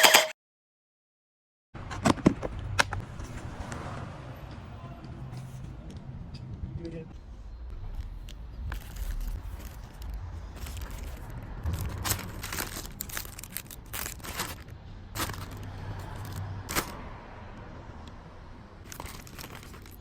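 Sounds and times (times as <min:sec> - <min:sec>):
packaging crinkling: 0:08.8 - 0:17.0, 0:18.9 - 0:20.0.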